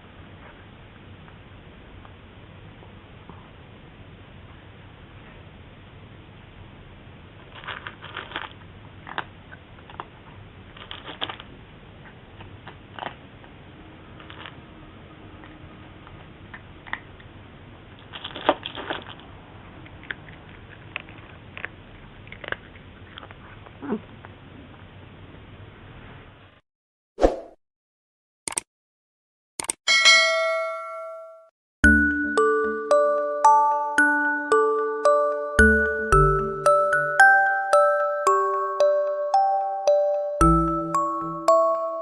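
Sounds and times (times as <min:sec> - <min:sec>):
cat crunching dry kibble: 0:07.4 - 0:11.6, 0:12.3 - 0:13.6, 0:14.2 - 0:14.7, 0:17.9 - 0:23.8.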